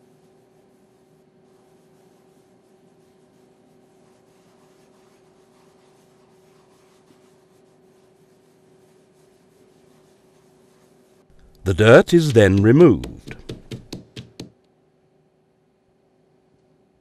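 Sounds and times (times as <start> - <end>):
rubbing and scratching on floor: 0.0 - 11.3.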